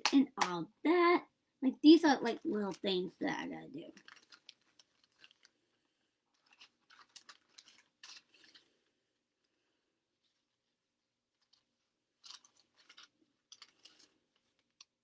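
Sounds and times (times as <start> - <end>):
paper receipts rustling: 2.2 - 5.7, 6.3 - 8.9.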